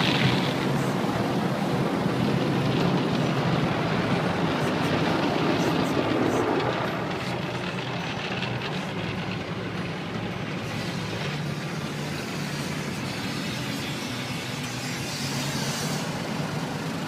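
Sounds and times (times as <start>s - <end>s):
car wash machinery rushing: 0.0s - 17.0s.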